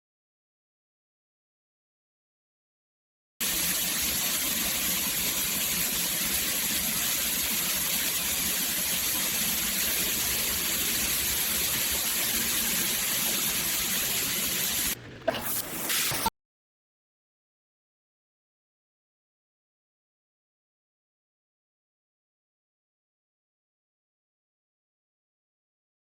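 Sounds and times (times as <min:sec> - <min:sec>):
water pouring from shower head: 0:03.4 - 0:15.0.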